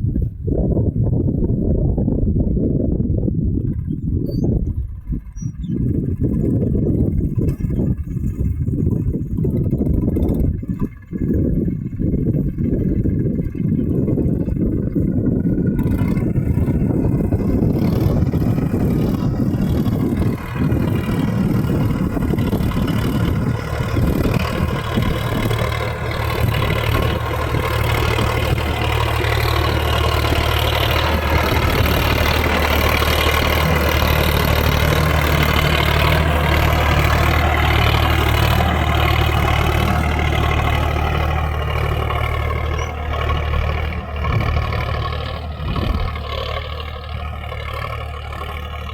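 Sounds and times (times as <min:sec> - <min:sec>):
tractor diesel engine running: 0:00.0 - 0:48.9.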